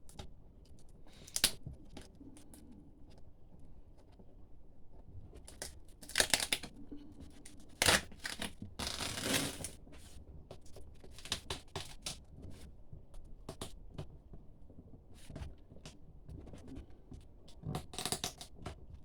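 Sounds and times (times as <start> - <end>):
duct tape ripping off cardboard: 6.0 - 6.7, 7.8 - 9.7.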